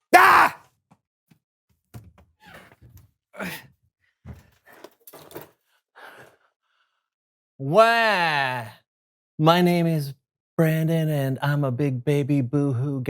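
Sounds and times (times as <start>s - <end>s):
person sighing and groaning: 0.1s - 0.6s, 3.4s - 3.7s.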